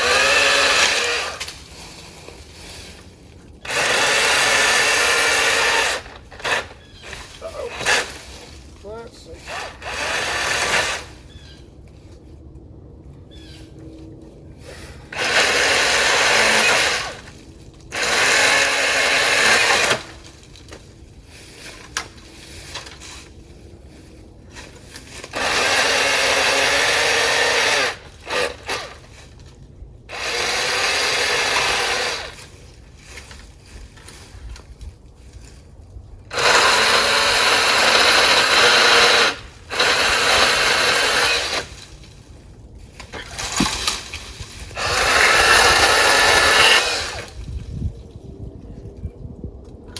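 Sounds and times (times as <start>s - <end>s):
chain saw cutting limbs: 0.0s - 11.3s, 14.7s - 20.9s, 24.5s - 29.5s, 30.1s - 34.9s, 36.3s - 47.7s.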